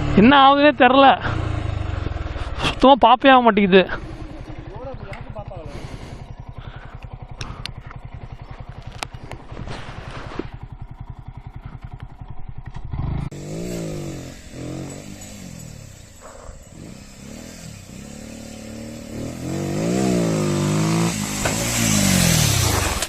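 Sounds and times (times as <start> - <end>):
motorcycle engine chugging and revving: 0.0 - 23.0
sharp clicks: 6.9 - 8.0.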